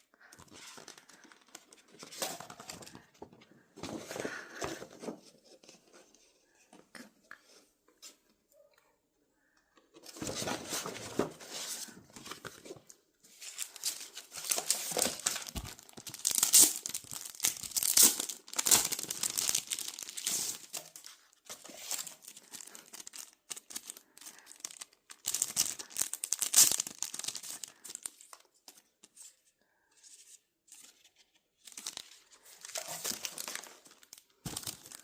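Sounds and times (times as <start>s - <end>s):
packaging crinkling and tearing: 13.4s - 28.8s, 31.6s - 35.0s.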